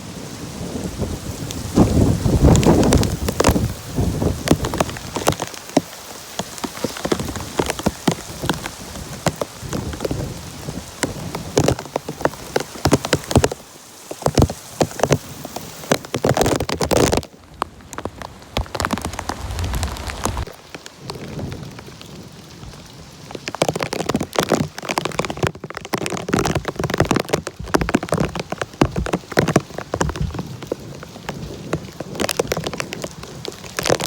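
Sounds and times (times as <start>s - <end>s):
heavy rain falling: 0.0s - 34.0s
raindrops splattering: 0.7s - 34.0s
low rumble of thunder: 0.9s - 5.0s, 18.6s - 22.8s.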